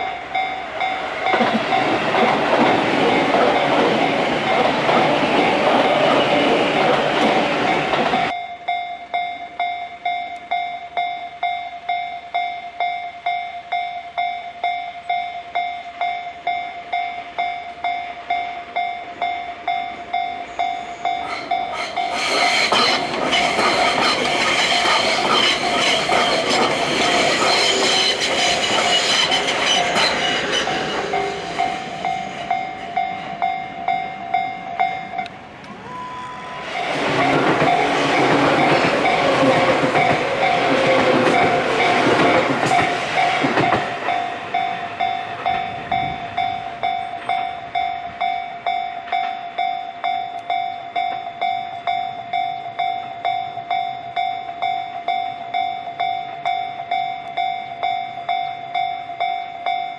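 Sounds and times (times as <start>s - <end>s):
level crossing warning bell ringing: 0.0s - 59.9s
train wheels clattering over rail joints: 0.8s - 8.3s, 21.1s - 33.5s, 36.8s - 46.5s.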